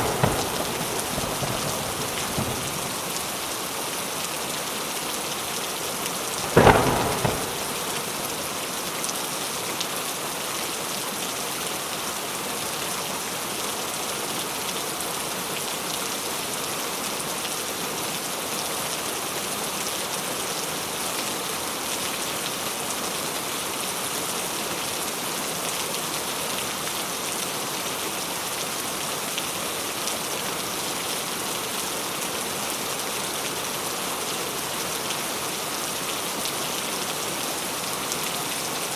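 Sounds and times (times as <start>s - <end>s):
loud crack of thunder: 0.0s - 3.4s, 6.4s - 8.3s
steady rainfall: 0.0s - 38.9s.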